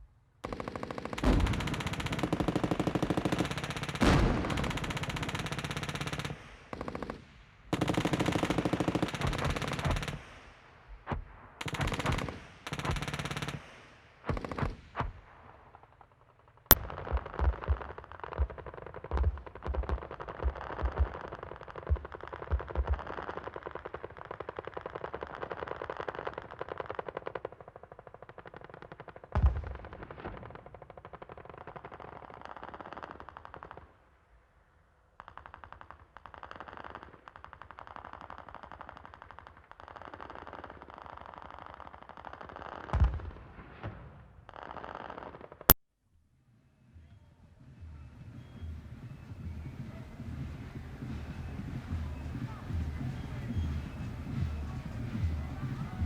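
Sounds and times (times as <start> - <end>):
machine-gun bursts: 0.4 - 7.2
scattered rapid shots: 0.4 - 10.3, 11.6 - 14.8
sharp gunshot crack: 4.0 - 4.9.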